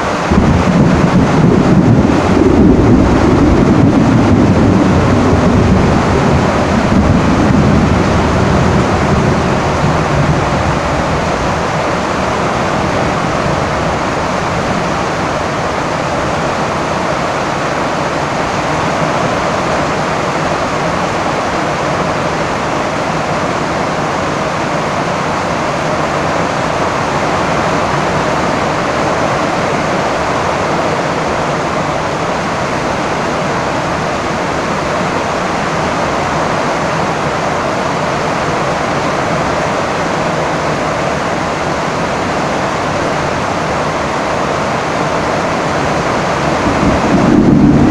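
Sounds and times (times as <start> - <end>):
heavy rain on a tin roof: 0.0 - 47.9
low thunder rumble: 0.2 - 16.3, 45.8 - 47.9.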